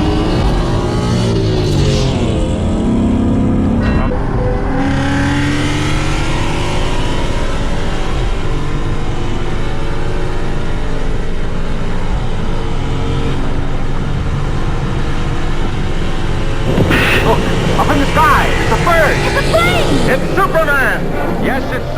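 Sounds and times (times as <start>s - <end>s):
car engine at full throttle: 0.0s - 15.9s.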